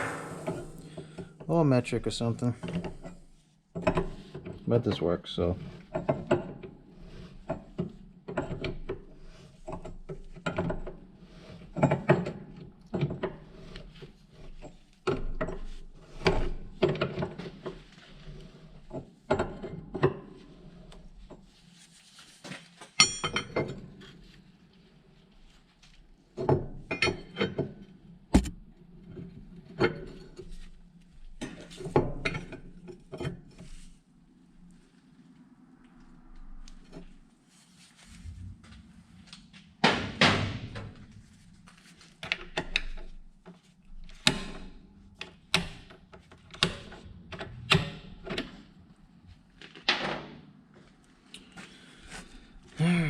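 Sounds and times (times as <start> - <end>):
sharp click: 28.4 - 28.6.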